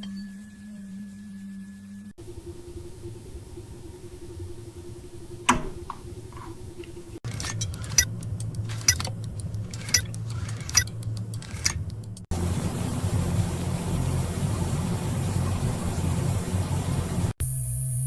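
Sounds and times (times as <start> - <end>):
small machines humming: 0.0 - 18.0
noisy rumble: 0.8 - 18.0
sharp metallic clicks and clinks: 7.2 - 12.3.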